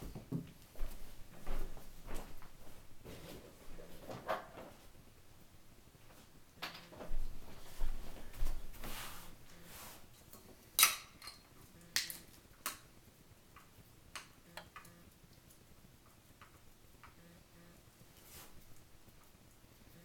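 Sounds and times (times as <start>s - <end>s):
rustling and scraping: 0.0s - 5.0s, 6.0s - 10.6s, 18.0s - 19.4s.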